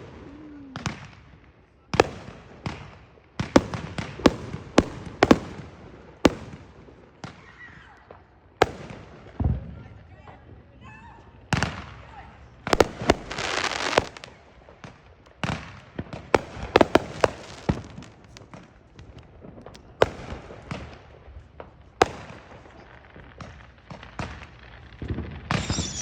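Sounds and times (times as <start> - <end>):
firework bangs: 0.0 - 10.0, 11.3 - 26.0
whistling firework: 12.8 - 14.4, 22.0 - 26.0
crackling pops: 16.0 - 25.7.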